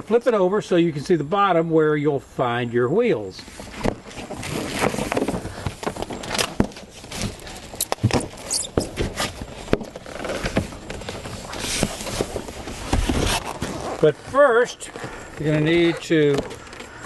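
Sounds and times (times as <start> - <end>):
cardboard rustling: 3.4 - 17.0.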